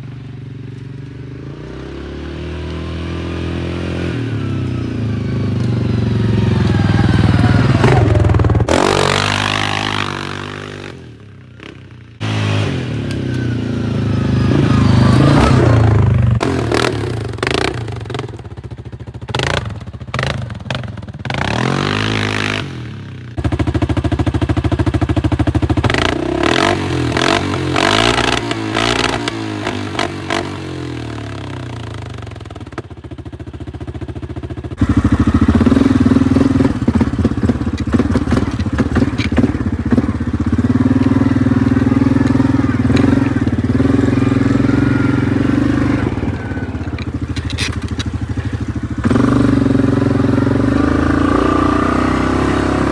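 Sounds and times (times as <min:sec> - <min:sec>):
atv engine revving: 0:00.0 - 0:52.9.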